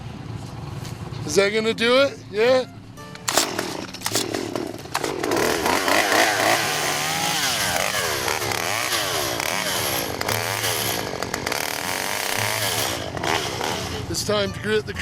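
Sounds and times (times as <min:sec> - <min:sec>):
chainsaw cutting wood: 0:03.3 - 0:14.1.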